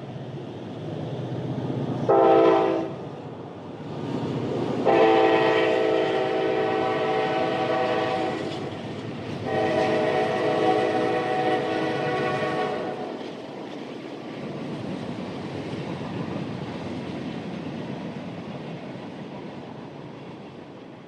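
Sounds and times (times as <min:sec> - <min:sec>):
train rolling rumble: 0:00.0 - 0:21.0
train air horn chord: 0:02.1 - 0:03.0, 0:04.8 - 0:08.5, 0:09.4 - 0:13.1.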